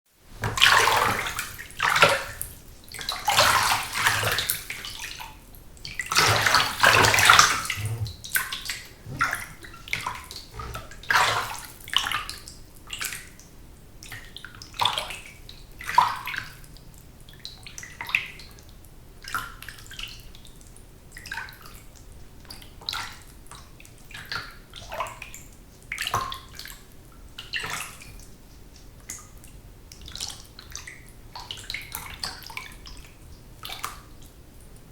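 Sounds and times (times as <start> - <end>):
bath water splashing: 6.1 - 8.4, 9.0 - 11.5.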